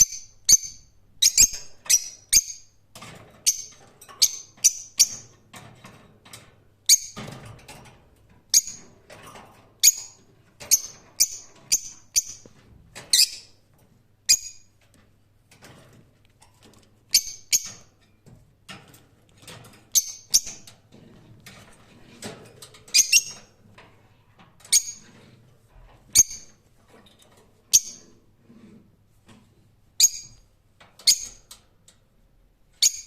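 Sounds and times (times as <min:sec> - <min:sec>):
bird chirping: 0:00.0 - 0:02.8, 0:03.4 - 0:05.4, 0:09.8 - 0:12.5, 0:14.3 - 0:14.7, 0:17.1 - 0:17.9, 0:19.9 - 0:20.7, 0:22.9 - 0:23.5, 0:26.2 - 0:26.5, 0:27.7 - 0:28.0, 0:30.0 - 0:30.4, 0:31.0 - 0:31.4, 0:32.8 - 0:33.0.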